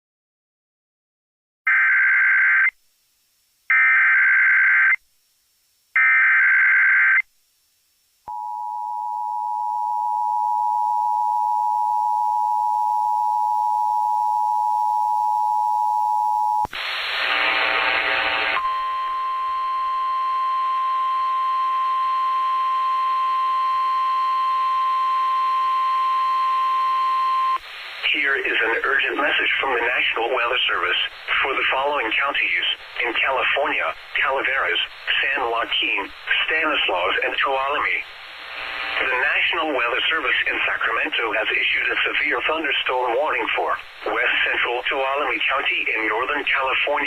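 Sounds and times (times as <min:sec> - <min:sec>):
steady high alarm tone: 0:08.3 - 0:16.6, 0:18.6 - 0:27.6
data bursts over radio: 0:28.0 - 0:47.0.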